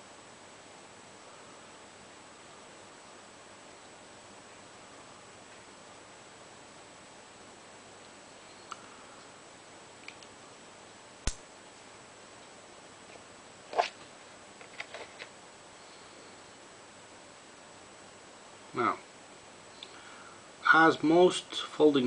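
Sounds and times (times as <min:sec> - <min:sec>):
faint steady hiss: 0:00.0 - 0:22.0.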